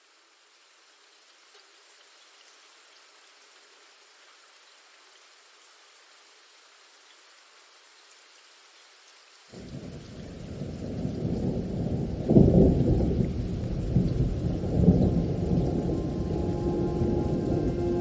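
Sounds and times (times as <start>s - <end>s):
rain hiss: 0.0s - 18.0s
thunder rumbling: 9.6s - 18.0s.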